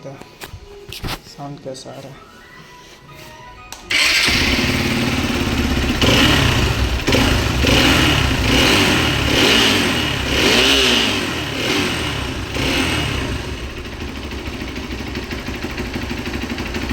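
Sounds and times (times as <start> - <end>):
motorcycle engine starting and revving: 3.9 - 16.9.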